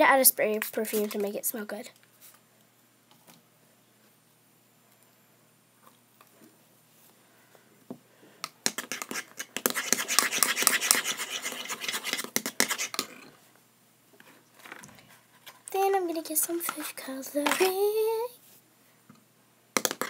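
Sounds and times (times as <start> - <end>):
utensil stirring slime in bowl: 8.6 - 13.4.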